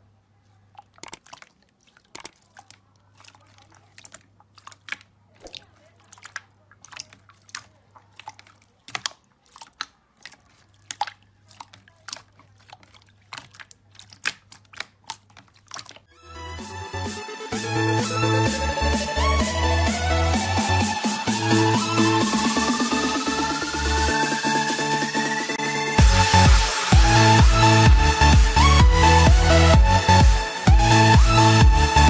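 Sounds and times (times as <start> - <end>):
crunchy material crackling: 0.4 - 16.1.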